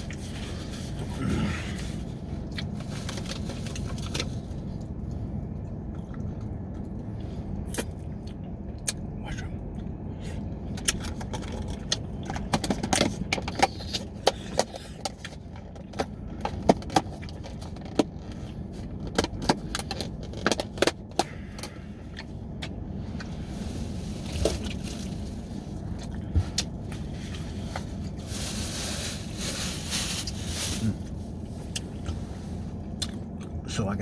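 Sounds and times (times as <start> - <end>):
low background rumble: 0.0 - 34.0
chewing mouth clicks and smacks: 7.8 - 10.0.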